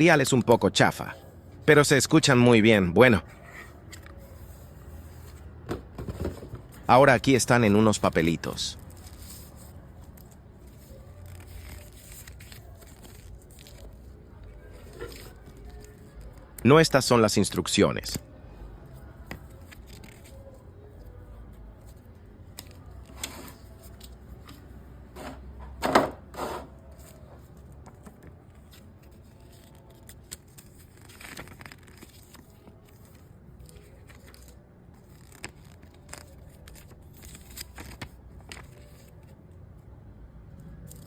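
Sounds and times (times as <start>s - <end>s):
paper rustling and crinkling: 3.2s - 16.5s, 19.1s - 25.4s, 26.8s - 39.4s.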